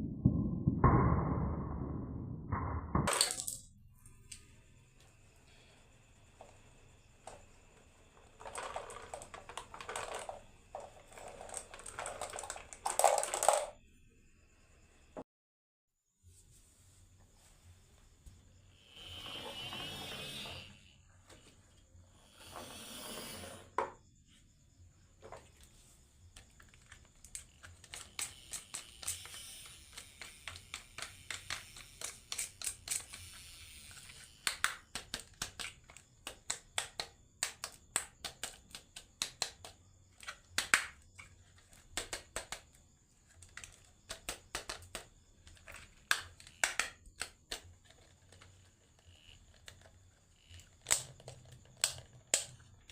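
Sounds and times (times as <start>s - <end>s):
marbles clattering down wooden run: 3.1s - 3.6s, 8.1s - 13.8s.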